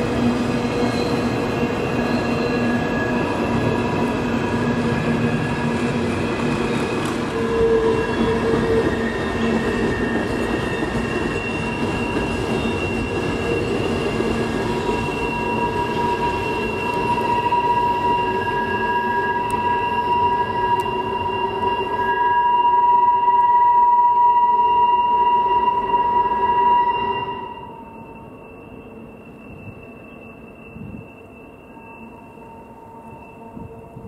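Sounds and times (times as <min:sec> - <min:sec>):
train cars rumbling: 0:00.0 - 0:23.4
train wheels squealing: 0:00.0 - 0:34.0.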